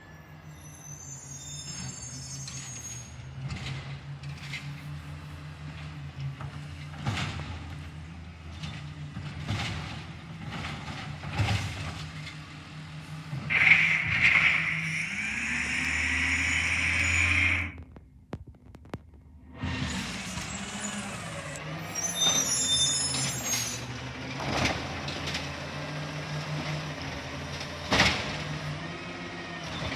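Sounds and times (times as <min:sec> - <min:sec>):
diesel engine idling: 0:12.4 - 0:18.2
loud high hiss: 0:13.5 - 0:17.8
short sharp hisses: 0:13.5 - 0:17.8.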